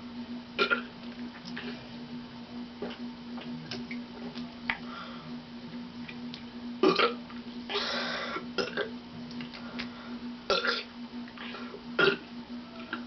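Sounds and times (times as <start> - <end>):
steady low hum: 0.0 - 13.0
girl burping: 6.8 - 7.9, 12.0 - 12.2.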